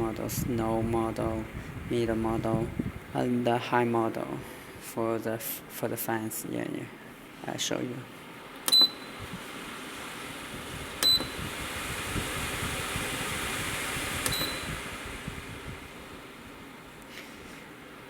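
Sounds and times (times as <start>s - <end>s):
fan rushing air: 0.0s - 18.0s
control panel beeping: 8.7s - 9.1s, 11.0s - 11.4s, 14.3s - 14.8s.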